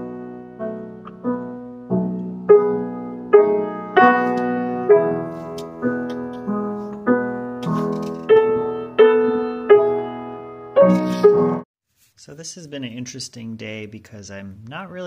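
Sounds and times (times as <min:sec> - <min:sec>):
prepared piano chords ringing: 0:00.0 - 0:11.6.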